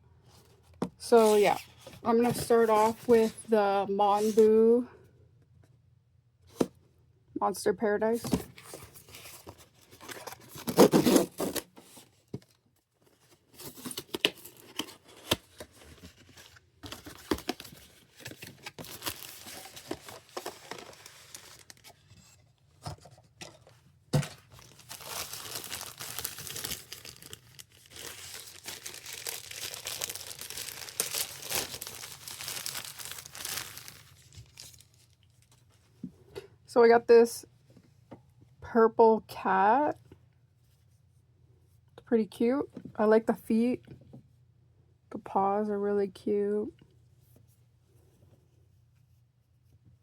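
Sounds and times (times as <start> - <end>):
packaging torn and crinkled: 17.3 - 21.9, 24.5 - 35.4.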